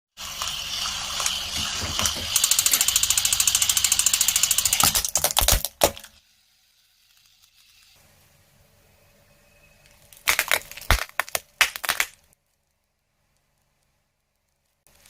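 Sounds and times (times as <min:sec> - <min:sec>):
rapid mechanical clicking: 0:00.4 - 0:05.3
loud knocks: 0:01.5 - 0:02.4.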